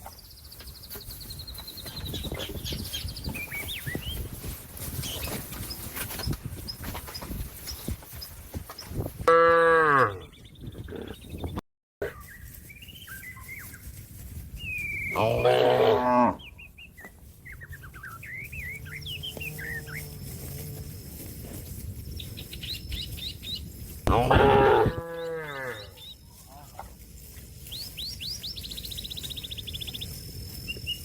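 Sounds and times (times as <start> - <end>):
small birds chirping: 0.0 - 9.2, 10.1 - 15.7, 16.3 - 20.9, 21.8 - 24.0, 25.2 - 31.0
cow mooing: 9.3 - 10.2, 15.2 - 16.4, 24.1 - 26.0.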